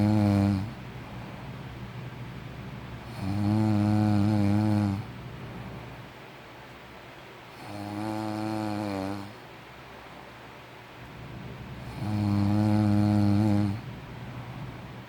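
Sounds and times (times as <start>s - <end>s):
person snoring: 0.0s - 0.8s, 3.0s - 5.1s, 7.6s - 9.4s, 11.8s - 13.8s
quiet breathing: 0.0s - 1.5s, 11.0s - 15.0s.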